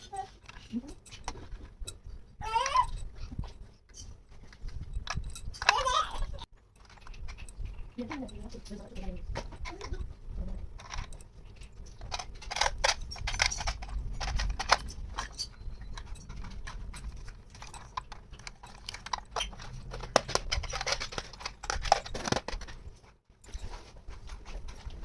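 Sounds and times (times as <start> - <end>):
plastic toy pieces clicking: 4.7 - 10.0, 10.8 - 22.8.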